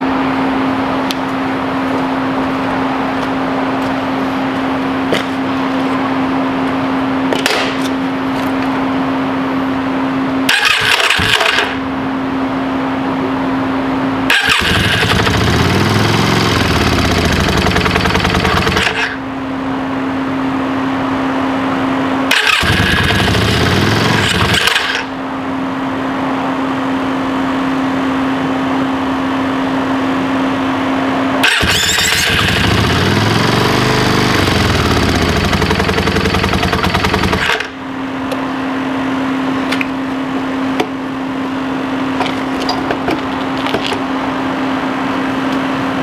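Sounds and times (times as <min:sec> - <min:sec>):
motorcycle electric starter whirring: 0:10.5 - 0:12.0, 0:14.3 - 0:19.4, 0:22.3 - 0:25.2, 0:31.4 - 0:37.8.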